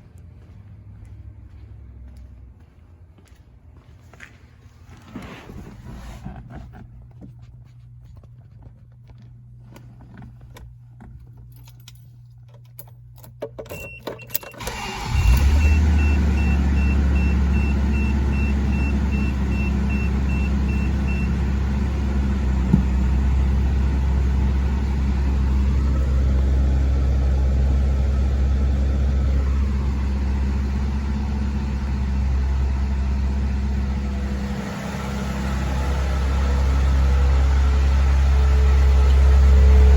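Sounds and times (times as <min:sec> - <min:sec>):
keys and ignition clicks: 0:10.1 - 0:15.6
engine cranking: 0:13.8 - 0:15.9
car engine idling: 0:14.7 - 0:39.9.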